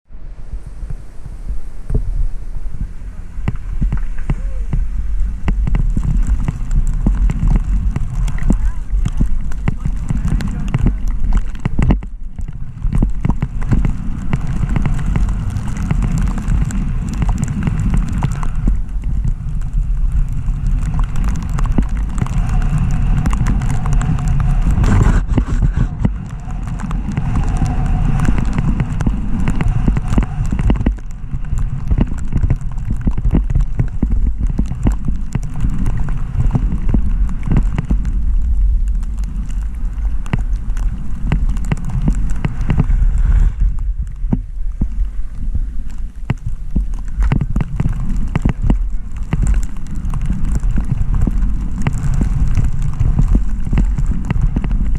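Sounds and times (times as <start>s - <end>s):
wind rumble on microphone: 0.0s - 54.9s
skis scraping over powder: 0.9s - 54.9s
ski edges clicking on hard snow: 2.8s - 54.9s.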